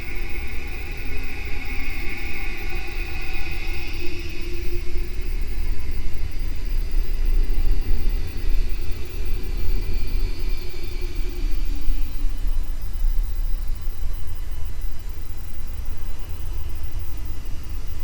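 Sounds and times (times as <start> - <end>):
eerie drifting tones: 0.0 - 13.8
deep steady rumble: 0.0 - 14.4.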